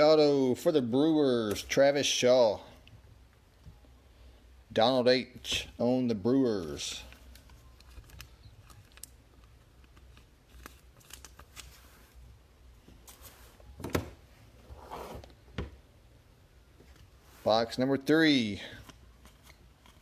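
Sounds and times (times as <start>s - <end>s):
cards and packaging clicks and rustles: 6.6s - 14.3s, 18.6s - 20.0s.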